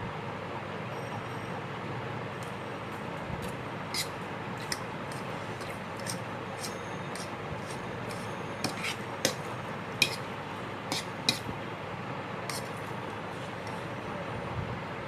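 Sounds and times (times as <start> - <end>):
cutlery clinking on dish: 4.0 - 10.2.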